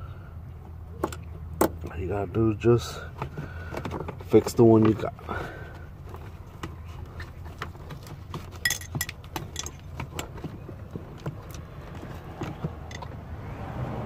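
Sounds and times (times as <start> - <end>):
low steady hum: 0.0 - 13.4
small metal objects clinking: 8.6 - 9.8.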